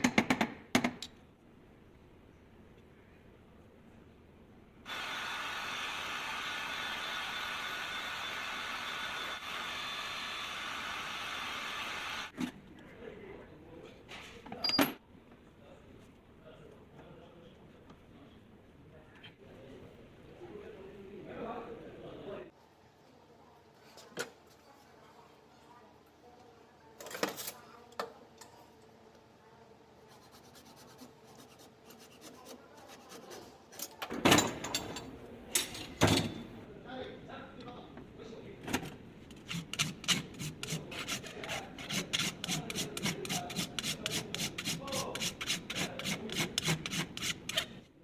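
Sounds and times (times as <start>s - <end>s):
power tool running: 4.9s - 12.3s
faint scratching and rubbing: 30.0s - 33.9s.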